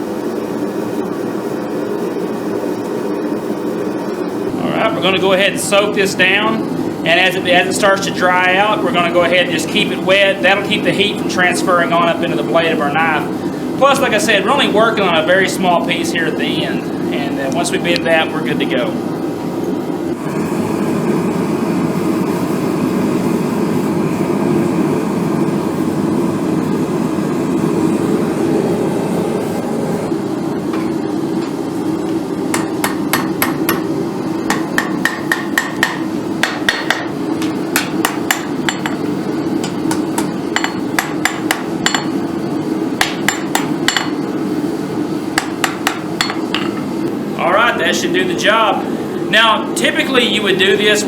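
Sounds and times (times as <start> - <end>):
forge running: 0.0 - 51.0
hammer ringing on anvil: 34.5 - 37.1, 37.8 - 39.0, 40.2 - 42.2, 43.0 - 44.2, 45.4 - 46.8.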